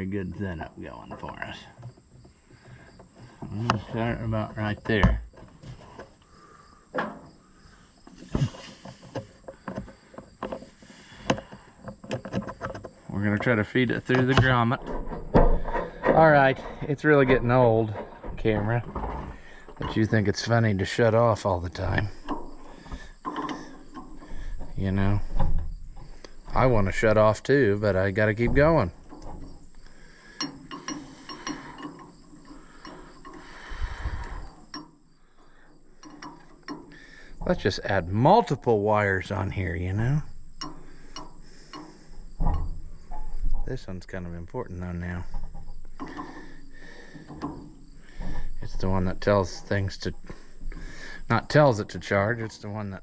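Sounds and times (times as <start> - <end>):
metallic clicks from tools: 30.4 - 33.4, 36.0 - 37.0
dull low thump: 39.9 - 43.9.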